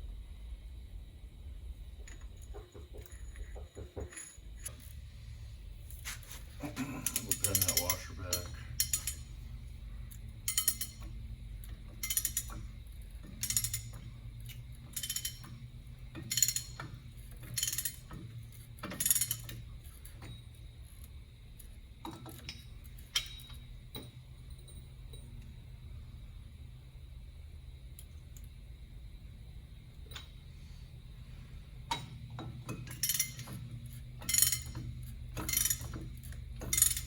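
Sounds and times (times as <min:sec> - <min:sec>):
ratchet wrench clicking: 0:07.0 - 0:09.4, 0:10.1 - 0:15.5, 0:16.2 - 0:18.2, 0:34.2 - 0:37.0.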